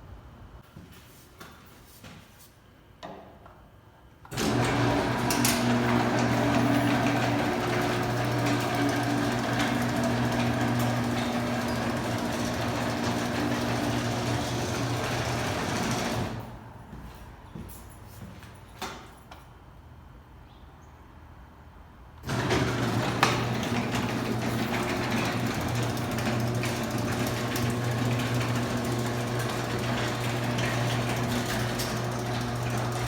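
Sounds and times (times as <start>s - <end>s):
garage door opener motor hum: 4.3s - 16.8s, 22.2s - 33.0s.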